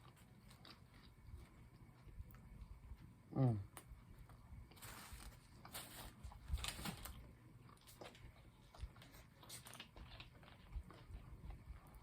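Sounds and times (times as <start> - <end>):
person chewing food: 0.0 - 4.8, 7.6 - 12.0.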